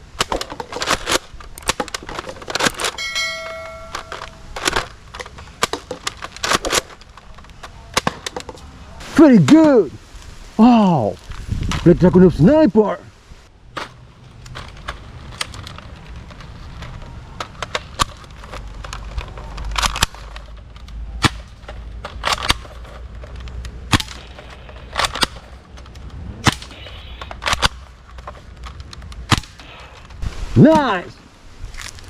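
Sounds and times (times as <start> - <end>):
toy rifle cracks and clicks: 14.4 - 29.8.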